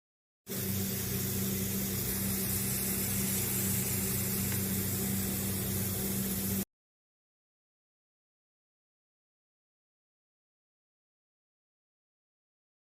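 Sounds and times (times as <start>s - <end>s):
steady low hum: 0.5s - 6.6s
hot oil sizzling: 0.5s - 6.7s.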